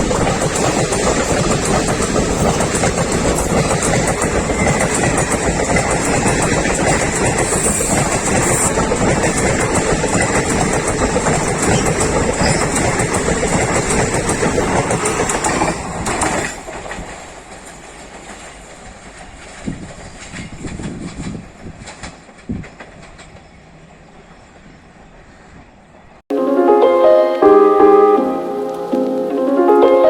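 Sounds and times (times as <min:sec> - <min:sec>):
wheel clicks over rail joints: 0:00.0 - 0:23.4
passenger train passing at speed: 0:00.0 - 0:30.0.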